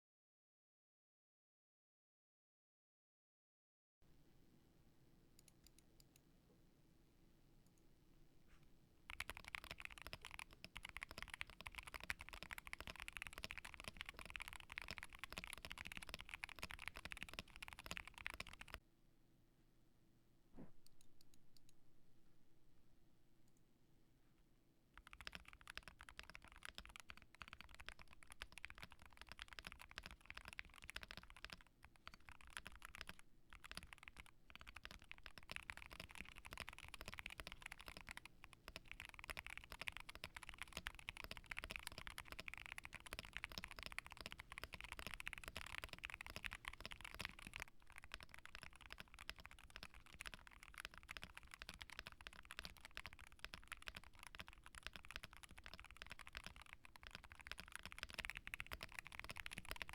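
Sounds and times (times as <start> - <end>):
mechanical keyboard typing: 9.1 - 18.8, 25.0 - 59.9.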